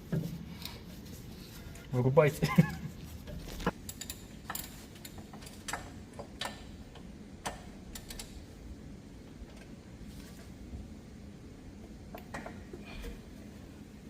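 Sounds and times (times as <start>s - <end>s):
clicks and taps of metal parts: 3.8s - 8.4s.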